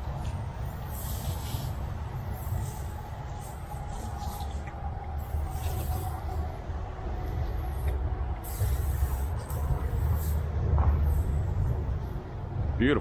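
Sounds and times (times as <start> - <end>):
machine rumble with faint whine: 0.0 - 13.0
hissing bursts of spray: 0.8 - 6.4, 8.4 - 10.5.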